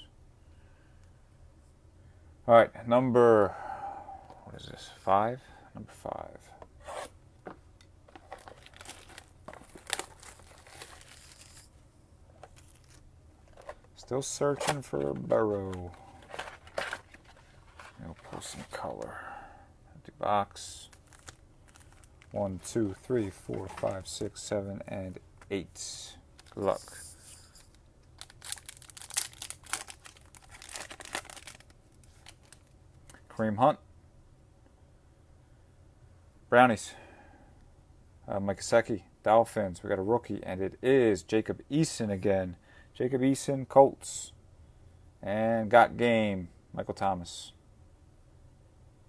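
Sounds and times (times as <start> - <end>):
wrapper tearing and crinkling: 8.2 - 11.7, 12.6 - 13.7, 20.9 - 24.0, 26.4 - 26.7, 27.6 - 33.2.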